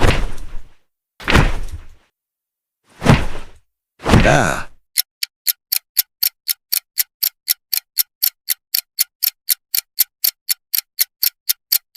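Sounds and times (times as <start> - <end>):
clock ticking: 4.9 - 11.9.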